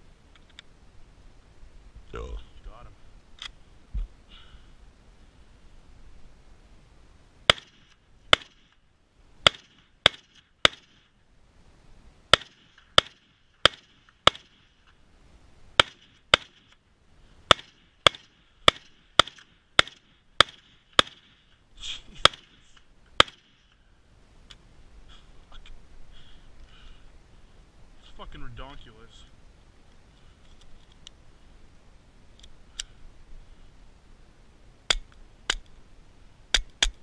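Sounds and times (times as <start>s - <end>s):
rifle shots: 7.5s - 8.7s, 9.4s - 11.1s, 12.3s - 14.6s, 15.8s - 16.7s, 17.5s - 21.4s.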